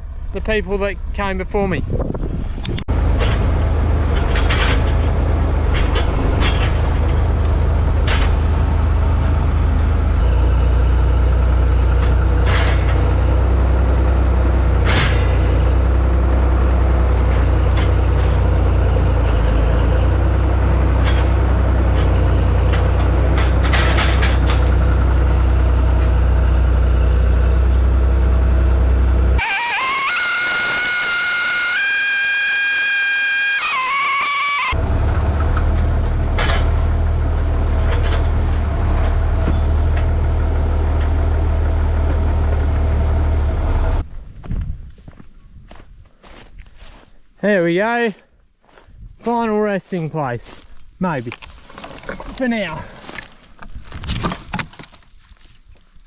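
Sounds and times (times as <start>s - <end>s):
tractor engine running: 0.0s - 44.2s
metal clanks: 3.0s - 8.8s, 11.9s - 13.4s, 14.7s - 15.9s, 20.9s - 26.2s, 34.5s - 37.1s.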